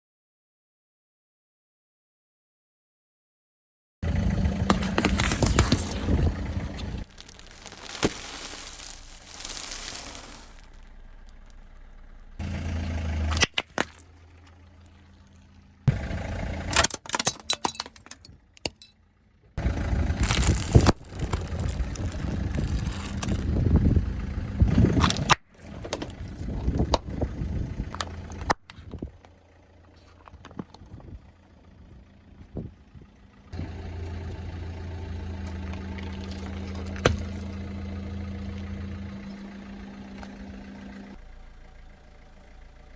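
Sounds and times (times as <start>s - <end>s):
car engine idling: 4.0s - 42.9s
car crushing objects: 4.4s - 19.1s, 19.9s - 23.6s, 35.4s - 37.7s.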